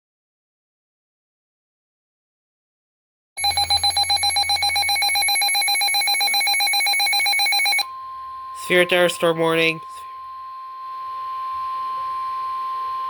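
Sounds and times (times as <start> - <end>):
warbling electronic alert tones: 3.4 - 10.5.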